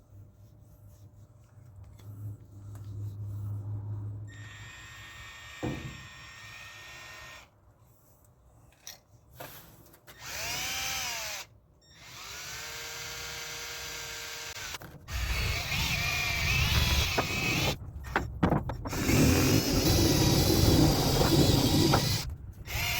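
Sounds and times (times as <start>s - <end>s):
power tool motor whine: 10.2s - 17.8s, 18.9s - 22.9s.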